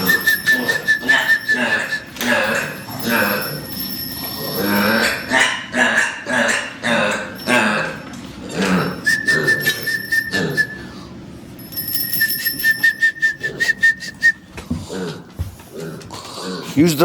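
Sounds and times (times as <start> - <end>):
steady high whistle: 0.0 - 2.2, 9.0 - 11.0, 11.8 - 14.5.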